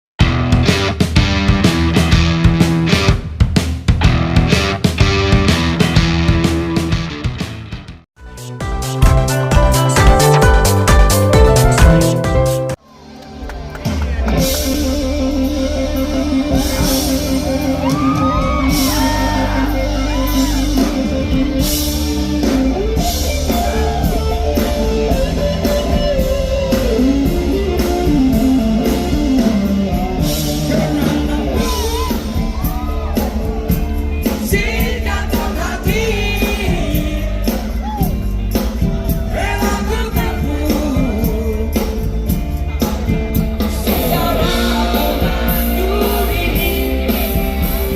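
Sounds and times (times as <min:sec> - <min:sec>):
live rock band playing: 0:00.2 - 0:47.9
person singing: 0:30.2 - 0:33.2, 0:39.2 - 0:42.2, 0:43.6 - 0:47.9.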